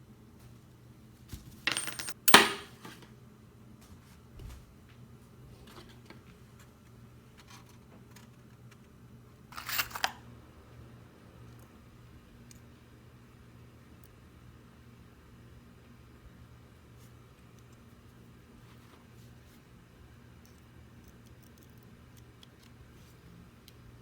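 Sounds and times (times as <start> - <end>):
small metal objects clinking: 9.6 - 10.2.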